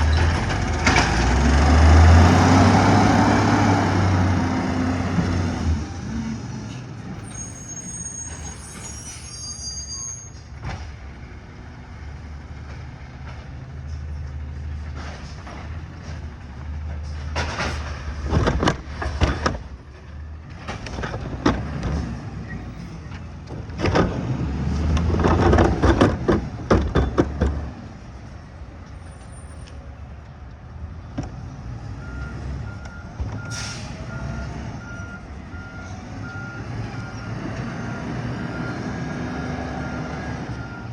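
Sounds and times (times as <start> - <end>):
loud clattering and banging: 14.8 - 22.2, 23.1 - 27.8
reversing alarm beeping: 32.0 - 40.9
air brake hiss: 33.5 - 34.1.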